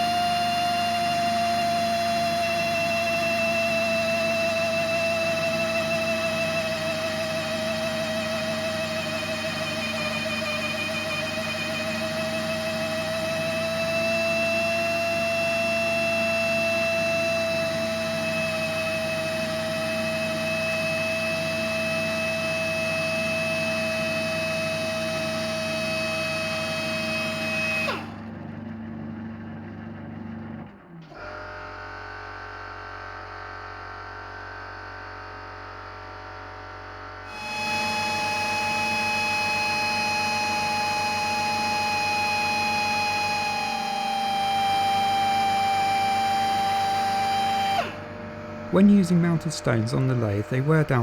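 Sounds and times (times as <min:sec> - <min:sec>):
grinder high whine: 0:00.0 - 0:28.1, 0:37.3 - 0:51.0
steady machine hum: 0:47.8 - 0:51.0.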